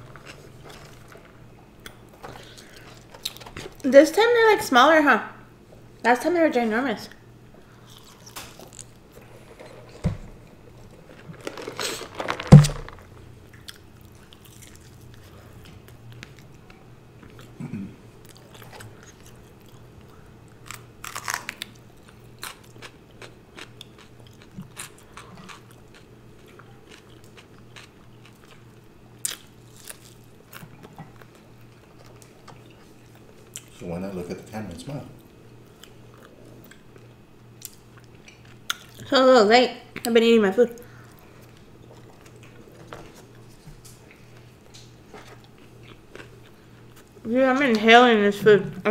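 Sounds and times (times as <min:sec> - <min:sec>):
person chewing food: 0:00.0 - 0:03.8, 0:07.6 - 0:09.5, 0:10.4 - 0:33.8, 0:41.0 - 0:47.2
loud thump: 0:12.4 - 0:13.0.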